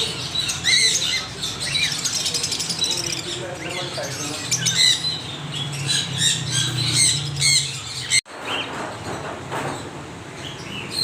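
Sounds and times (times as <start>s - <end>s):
parrots chattering: 0.0s - 8.2s
parrots squawking: 0.0s - 8.2s.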